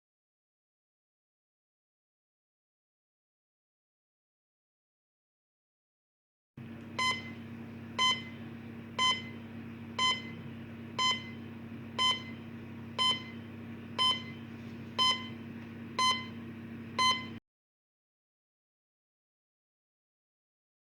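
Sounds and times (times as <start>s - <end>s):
constant low hum: 6.6s - 17.4s.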